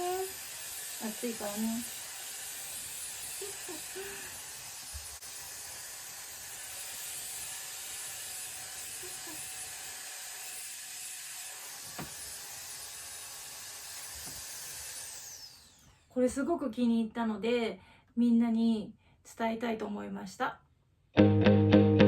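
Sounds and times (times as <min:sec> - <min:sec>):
hair dryer blowing air: 0:00.0 - 0:10.8, 0:11.5 - 0:16.0.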